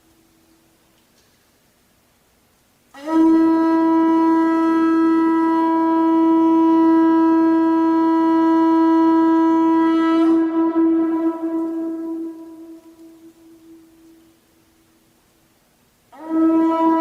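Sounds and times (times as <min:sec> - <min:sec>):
conch shell trumpet note: 0:02.9 - 0:14.4, 0:16.1 - 0:17.0.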